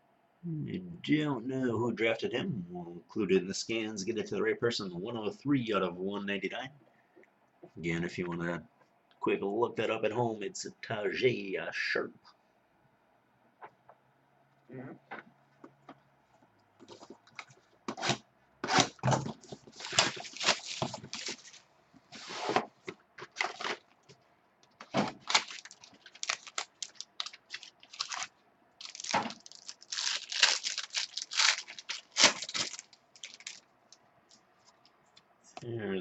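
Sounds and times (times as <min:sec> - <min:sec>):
card pack wrappers crinkling and tearing: 0:17.3 - 0:21.6, 0:23.2 - 0:24.1, 0:24.7 - 0:34.4.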